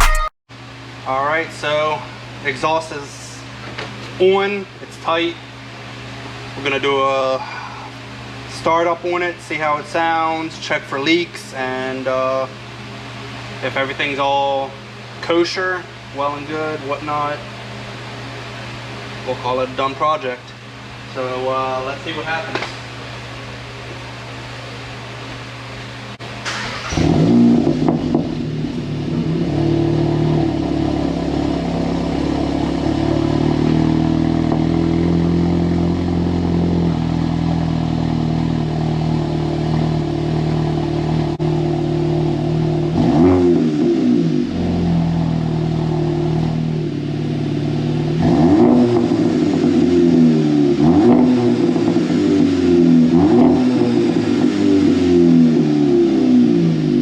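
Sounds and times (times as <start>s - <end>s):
car engine idling and revving: 26.2s - 57.0s.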